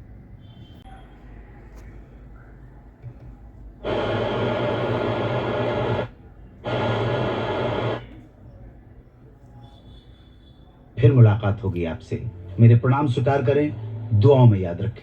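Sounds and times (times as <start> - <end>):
harsh static from car speakers: 3.8 - 8.3.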